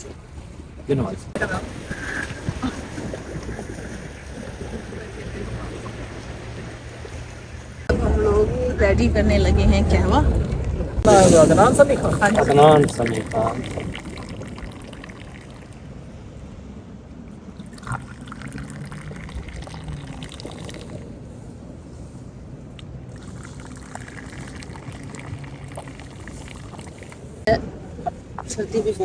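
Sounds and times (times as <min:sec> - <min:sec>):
water pouring and trickling: 0:01.4 - 0:08.0, 0:11.0 - 0:16.0, 0:17.3 - 0:21.2, 0:22.8 - 0:27.5.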